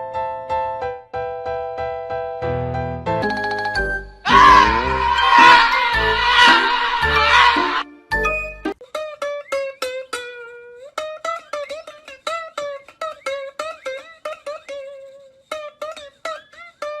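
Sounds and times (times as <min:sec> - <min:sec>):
plucked string instrument: 0:04.2 - 0:17.0.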